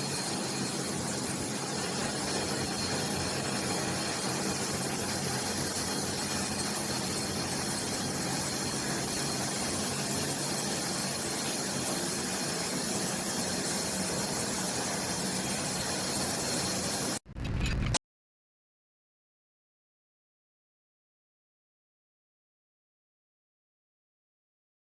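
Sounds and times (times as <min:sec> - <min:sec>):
low hum: 0:17.3 - 0:18.0.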